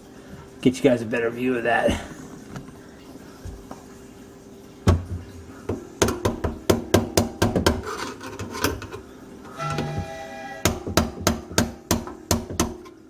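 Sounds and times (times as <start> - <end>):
knocks and taps on drain pipes: 4.8 - 8.9, 10.6 - 13.0.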